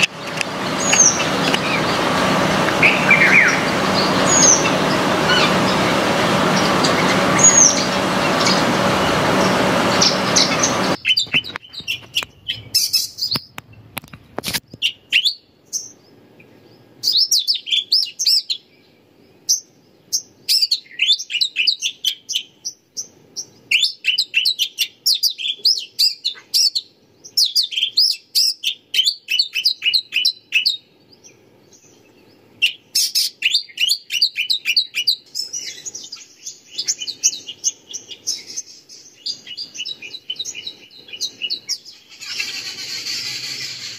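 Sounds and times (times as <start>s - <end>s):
sharp clicks: 0.0s - 1.6s
small birds chirping: 0.0s - 13.9s, 14.6s - 43.9s.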